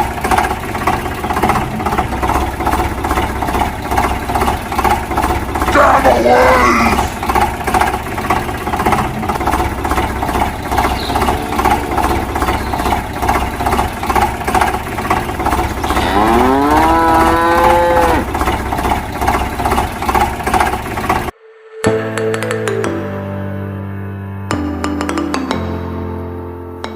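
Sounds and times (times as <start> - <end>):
rhythmic engine chugging: 0.0 - 21.3
cow mooing: 11.0 - 12.9, 15.4 - 18.4.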